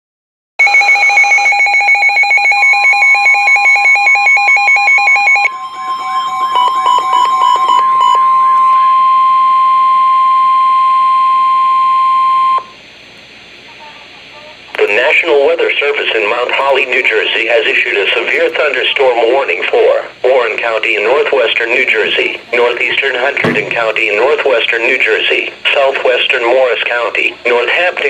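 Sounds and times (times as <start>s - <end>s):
steady alarm tone: 0.6s - 12.8s, 21.1s - 25.4s
rapidly pulsing beeping: 3.7s - 8.6s
warbling siren-like tones: 4.7s - 9.9s.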